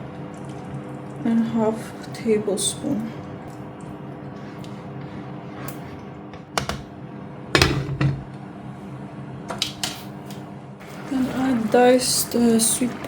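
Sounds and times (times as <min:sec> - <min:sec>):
steady low hum: 0:00.0 - 0:09.5.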